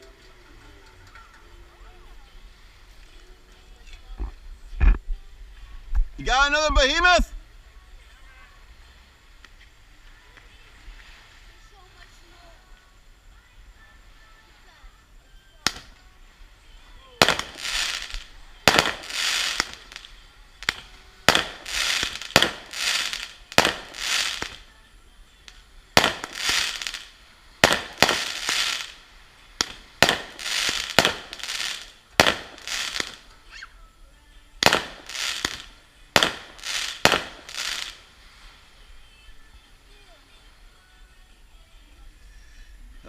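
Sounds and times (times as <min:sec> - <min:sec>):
fireworks bangs with crackle: 0:15.6 - 0:16.0, 0:17.2 - 0:24.7, 0:25.5 - 0:33.3, 0:34.6 - 0:38.5.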